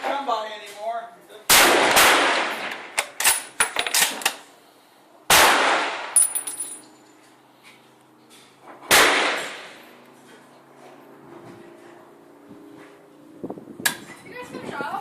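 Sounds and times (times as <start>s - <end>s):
rifle shots echoing: 1.5s - 3.2s, 5.3s - 6.3s, 8.9s - 9.8s.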